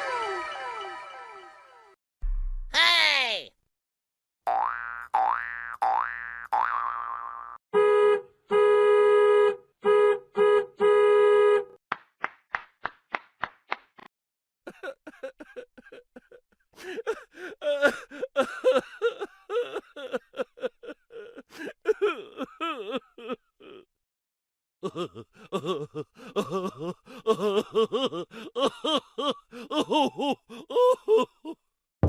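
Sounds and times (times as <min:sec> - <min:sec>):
car horn honking: 0:07.8 - 0:11.8.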